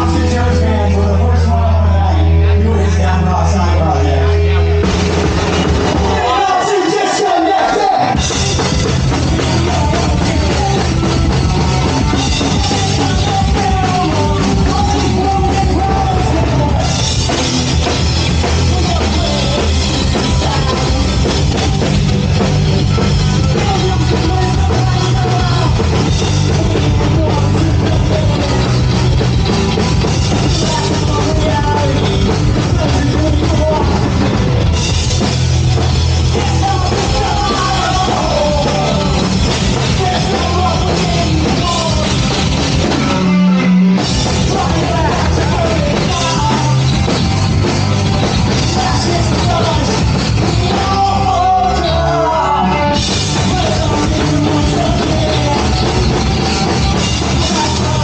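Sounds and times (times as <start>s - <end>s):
person singing: 0.0s - 5.0s, 5.9s - 35.2s, 35.8s - 58.0s
loud rock music: 0.0s - 58.0s
pounding drum kit: 0.0s - 58.0s.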